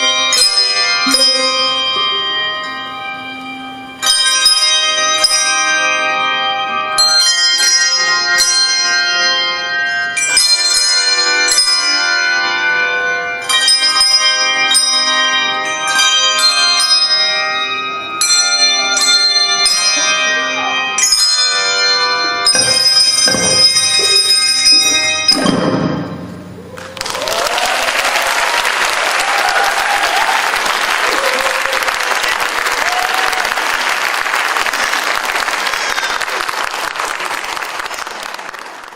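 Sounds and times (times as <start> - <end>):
handbell ensemble ringing chords: 0.0 - 27.4
audience applauding: 26.8 - 38.9.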